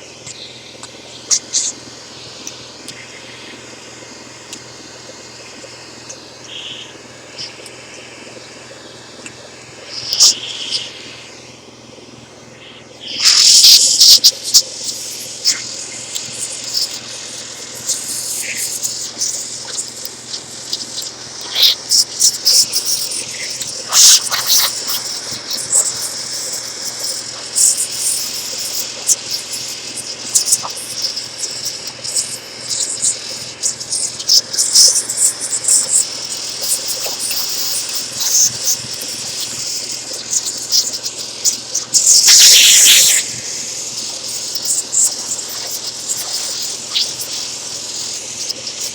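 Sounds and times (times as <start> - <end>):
faint steady hum: 0.0 - 48.9
compressed air hissing: 12.5 - 48.9.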